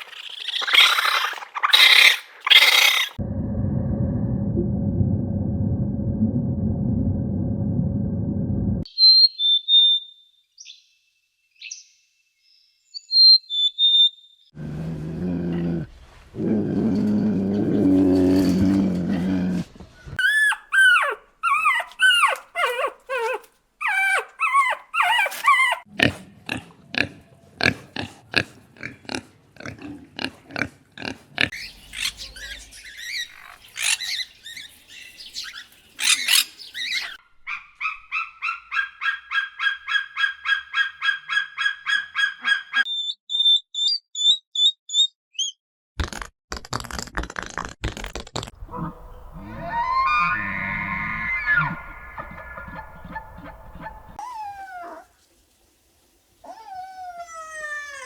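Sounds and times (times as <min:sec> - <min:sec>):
quick repeated animal calls: 0:00.0 - 0:03.2
low pitched animal call: 0:48.6 - 0:55.1.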